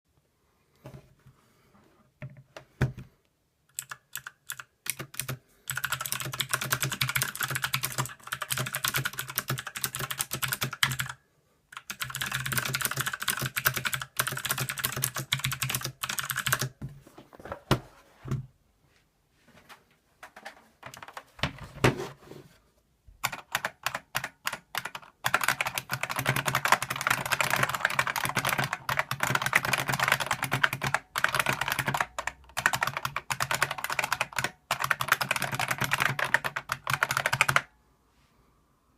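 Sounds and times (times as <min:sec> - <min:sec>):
typing on mechanical keyboard: 0:03.7 - 0:16.8, 0:20.2 - 0:21.4, 0:23.2 - 0:37.7.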